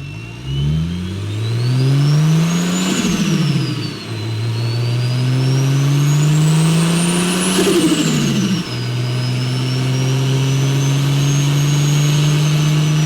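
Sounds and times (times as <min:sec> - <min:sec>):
car engine accelerating: 0:00.0 - 0:13.0
turbo whistle: 0:00.0 - 0:13.0
turbo flutter: 0:07.0 - 0:08.9.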